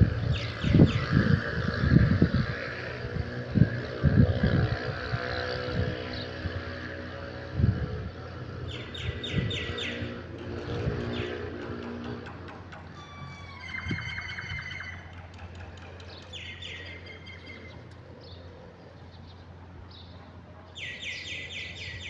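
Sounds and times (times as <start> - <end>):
wind buffeting microphone: 0.0 - 18.4
bird chirping: 8.6 - 12.1, 13.0 - 22.0.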